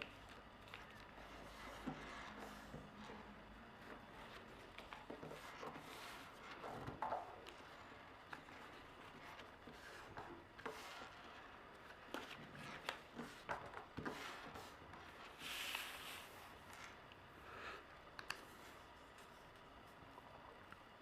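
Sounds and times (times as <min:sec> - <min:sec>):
paper folding crinkles and taps: 0:00.0 - 0:03.2, 0:11.8 - 0:16.0.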